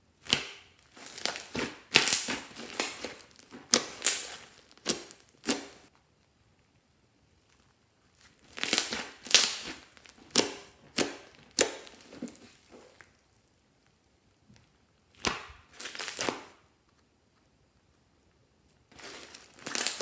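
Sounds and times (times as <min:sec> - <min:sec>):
crinkling handling noise: 0:00.2 - 0:06.6, 0:07.3 - 0:17.5, 0:18.6 - 0:20.0.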